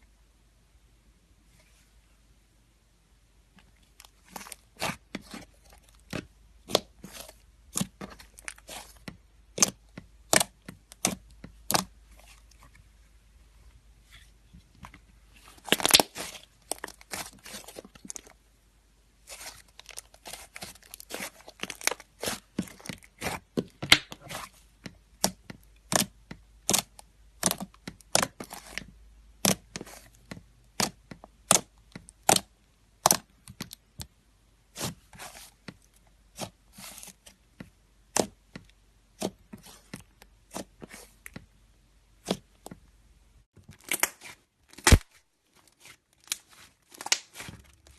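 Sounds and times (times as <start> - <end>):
slime popping and crackling: 15.6 - 18.3, 46.2 - 47.6.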